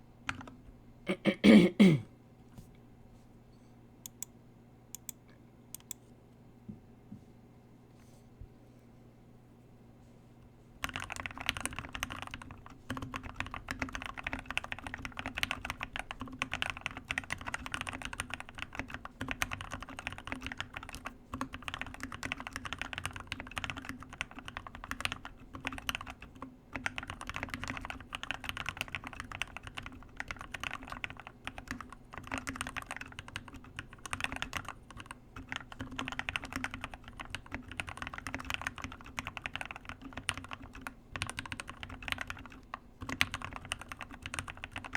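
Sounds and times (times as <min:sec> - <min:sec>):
typing on mechanical keyboard: 0:00.3 - 0:00.6, 0:10.8 - 0:44.9.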